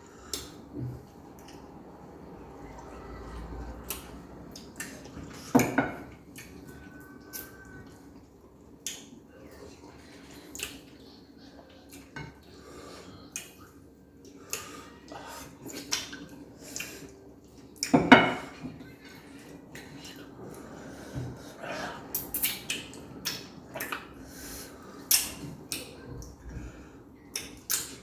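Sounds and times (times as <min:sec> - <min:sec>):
dishes and utensils clinking: 0:17.9 - 0:20.0.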